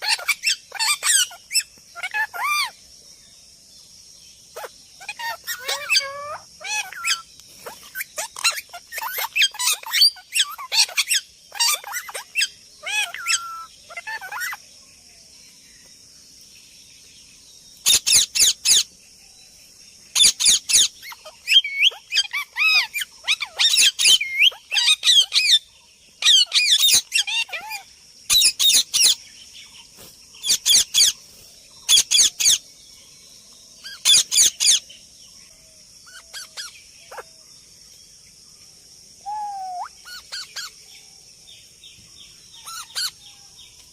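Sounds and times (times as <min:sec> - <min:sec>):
parrot squawking: 0:04.6 - 0:14.6, 0:17.9 - 0:18.8, 0:30.4 - 0:31.1, 0:31.9 - 0:32.6, 0:33.9 - 0:34.8, 0:36.1 - 0:37.2, 0:39.3 - 0:40.7
faint high hiss: 0:28.5 - 0:34.0.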